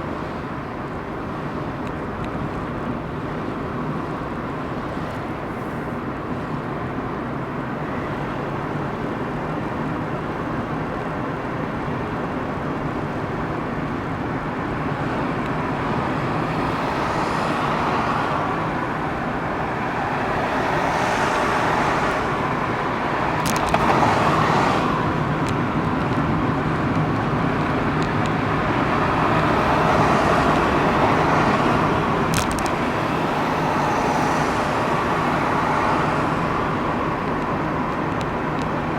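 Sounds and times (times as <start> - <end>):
road noise: 0.0 - 38.9
car engine: 14.2 - 38.9.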